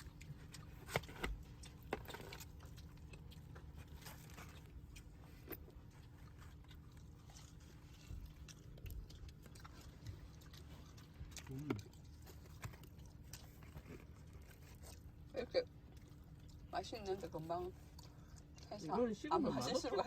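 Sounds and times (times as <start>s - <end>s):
person chewing bread: 0.0s - 19.6s.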